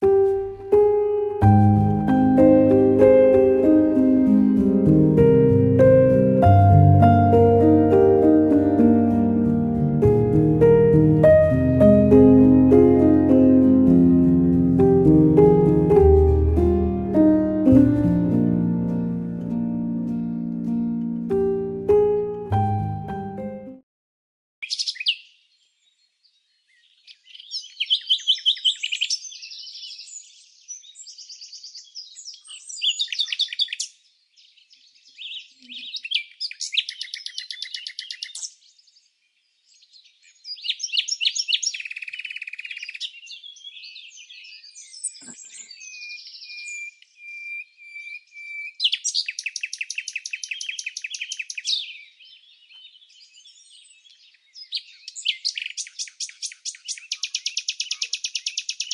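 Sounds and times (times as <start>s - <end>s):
songbirds trilling and chirping: 24.6s - 58.9s.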